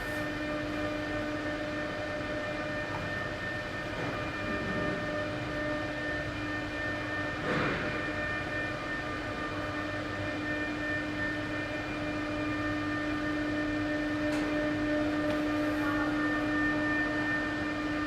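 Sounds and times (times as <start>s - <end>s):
mechanical hum with whine: 0.0s - 18.0s.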